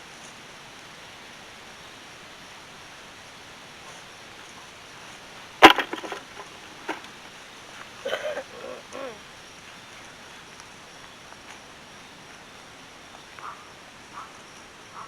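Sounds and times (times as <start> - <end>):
digging tool striking rocky soil: 5.6 - 7.1
soil crackling: 5.6 - 7.3.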